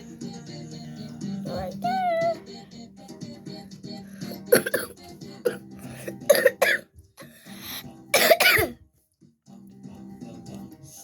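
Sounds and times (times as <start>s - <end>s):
person coughing: 4.5s - 7.3s, 8.2s - 8.8s.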